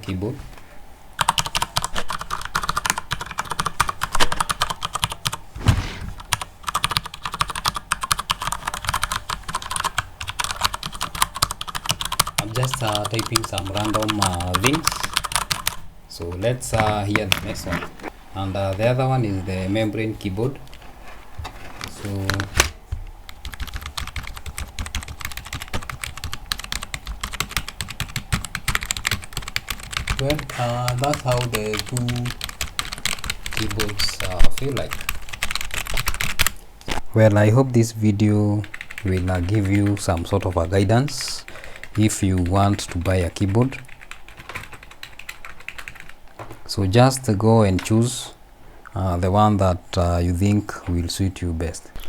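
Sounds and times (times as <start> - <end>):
fast typing on keyboard: 1.2 - 5.4, 6.3 - 15.8, 16.7 - 17.7, 23.3 - 36.6, 38.6 - 46.2
dull thump: 5.6 - 6.2.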